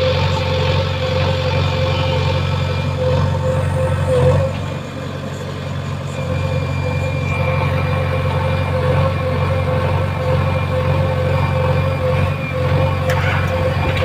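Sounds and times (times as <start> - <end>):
diesel engine idling: 0.0 - 14.0
steady whine: 0.0 - 14.0.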